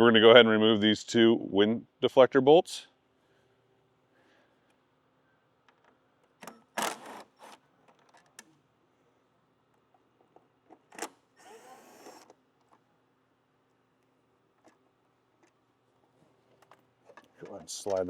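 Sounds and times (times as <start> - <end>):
power tool whirring: 11.0 - 12.4.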